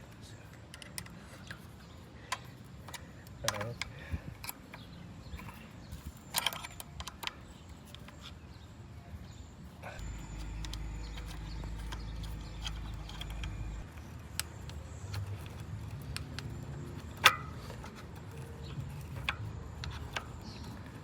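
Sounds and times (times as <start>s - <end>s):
metal tool clicks and taps: 10.4s - 21.0s.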